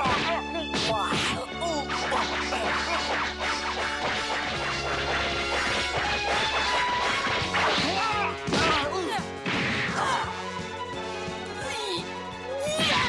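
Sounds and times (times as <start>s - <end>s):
punch sound effects: 0.0s - 10.2s
dramatic background music: 0.0s - 13.0s.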